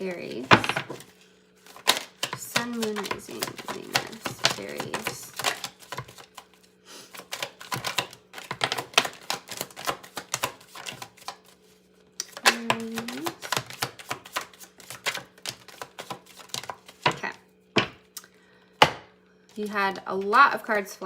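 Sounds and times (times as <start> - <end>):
cards being shuffled: 0.3 - 11.6, 12.2 - 17.2.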